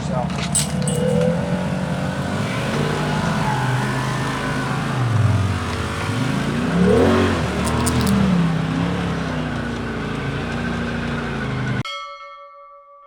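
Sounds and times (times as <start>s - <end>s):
off-road vehicle engine revving: 0.0s - 11.8s
ringing chime-like tone: 0.6s - 2.0s, 11.8s - 13.0s.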